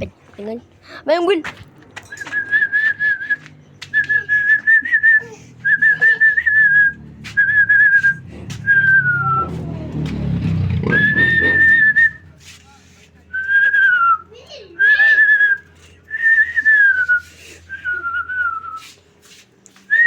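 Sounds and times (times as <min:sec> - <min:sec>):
person whistling: 0:02.1 - 0:09.6, 0:10.9 - 0:12.3, 0:13.4 - 0:19.0
low rumbling noise: 0:04.7 - 0:12.4.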